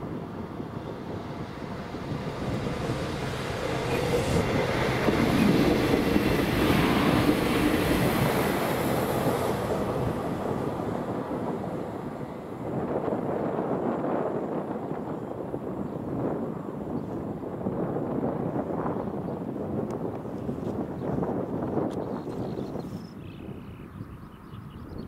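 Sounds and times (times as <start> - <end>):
passenger train passing: 0.0 - 19.8.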